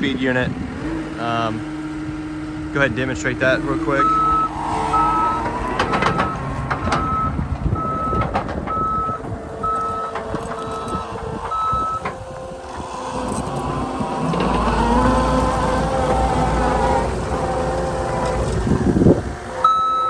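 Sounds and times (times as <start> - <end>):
diesel engine running: 0.0 - 20.0
back-up alarm beeping: 3.6 - 15.6, 19.6 - 20.0.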